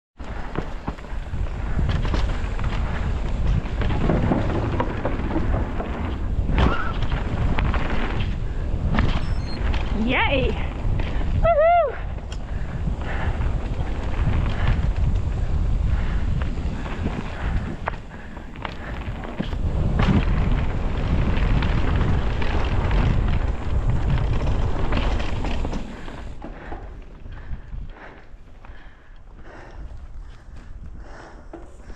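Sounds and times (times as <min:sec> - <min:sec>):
bike rattling and knocking: 0:00.2 - 0:31.9
wind buffeting microphone: 0:00.2 - 0:31.9
bike rattling knocks: 0:00.4 - 0:09.9.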